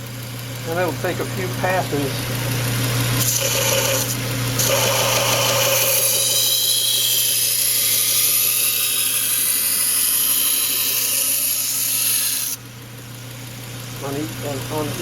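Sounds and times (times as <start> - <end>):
belt grinder motor hum: 0.0 - 12.7
knife grinding on abrasive belt: 3.2 - 12.6.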